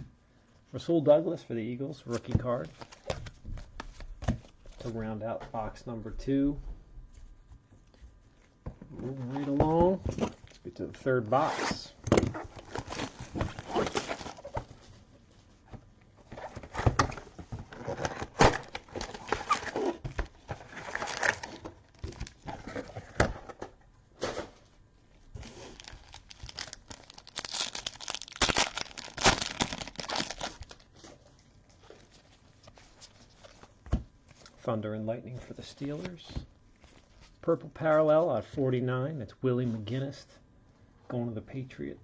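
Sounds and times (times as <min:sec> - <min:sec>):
plastic wrappers crinkling and tearing: 0:12.3 - 0:14.8, 0:17.2 - 0:23.2, 0:25.4 - 0:33.8.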